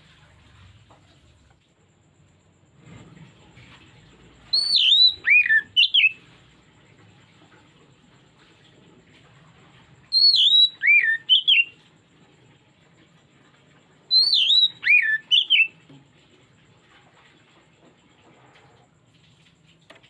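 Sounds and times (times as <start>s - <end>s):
bird whistling song: 4.4s - 6.3s, 10.1s - 11.8s, 14.1s - 15.8s.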